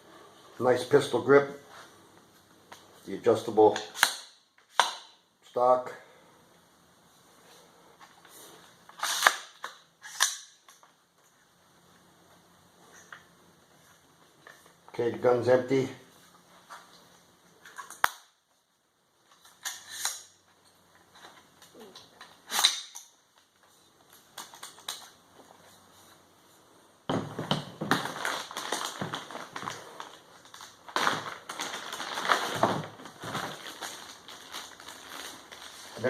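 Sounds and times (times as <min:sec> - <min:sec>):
rustling and clattering of items: 0:16.1 - 0:36.0.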